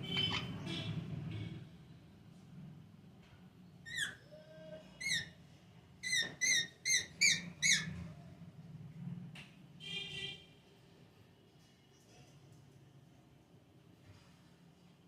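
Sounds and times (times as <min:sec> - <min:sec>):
parrot squeaky chirps: 0:00.0 - 0:00.7, 0:03.8 - 0:04.2, 0:05.0 - 0:05.4, 0:06.0 - 0:08.0.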